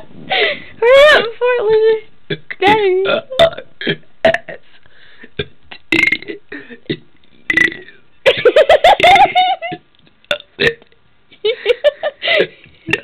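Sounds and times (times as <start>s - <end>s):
person burping: 2.3s - 4.6s, 5.4s - 8.0s, 9.0s - 10.9s.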